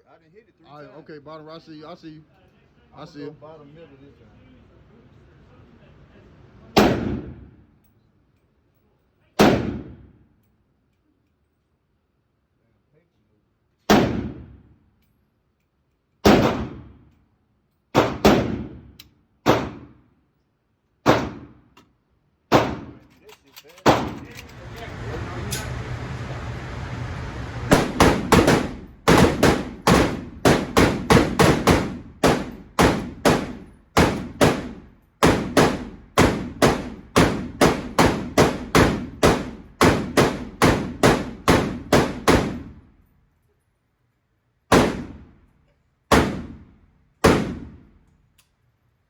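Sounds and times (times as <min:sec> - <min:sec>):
rifle shots: 0:06.8 - 0:07.5, 0:09.4 - 0:10.1, 0:13.9 - 0:14.6, 0:16.2 - 0:17.0, 0:18.0 - 0:20.0, 0:21.1 - 0:21.6, 0:22.5 - 0:23.0, 0:27.7 - 0:42.8, 0:44.7 - 0:45.3, 0:46.1 - 0:47.9.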